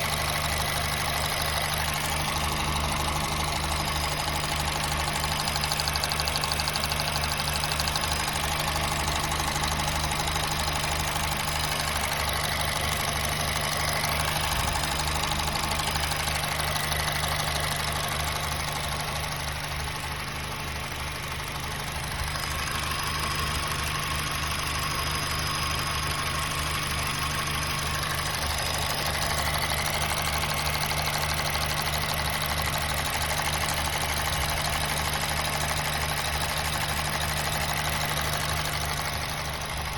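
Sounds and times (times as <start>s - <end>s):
car engine idling: 0.0s - 39.9s
valvetrain ticking: 0.1s - 20.2s.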